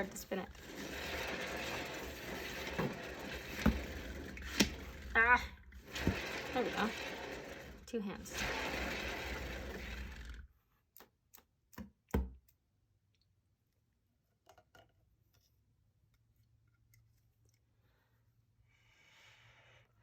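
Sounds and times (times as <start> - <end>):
turntable whirring: 0.0 - 10.5.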